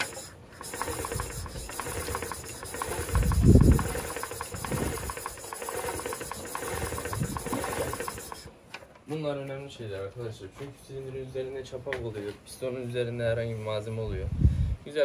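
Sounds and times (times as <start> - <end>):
rapid metallic clicks: 0.0 - 8.5.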